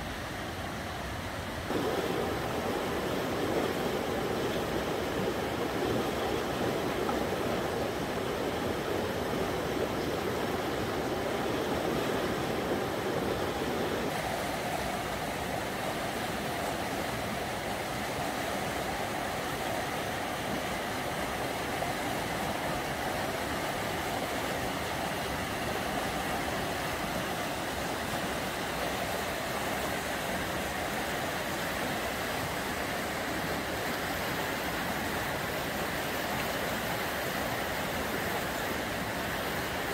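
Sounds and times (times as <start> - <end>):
river rapids roaring: 0.0 - 39.9.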